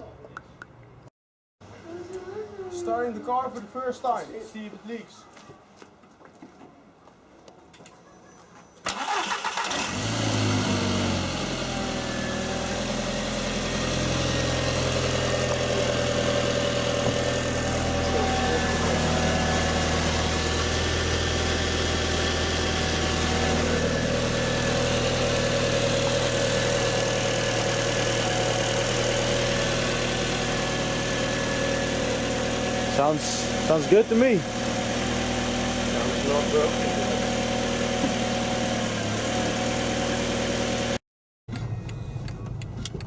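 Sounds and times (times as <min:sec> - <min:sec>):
car engine cranking and idling: 0:08.9 - 0:43.0.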